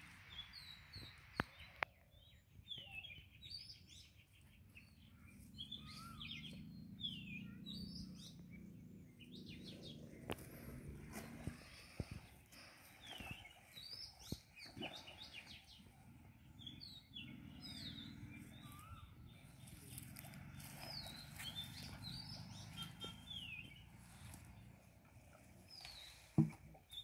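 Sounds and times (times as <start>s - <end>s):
small birds chirping: 0.2s - 27.0s
faint low rumble: 4.3s - 22.7s.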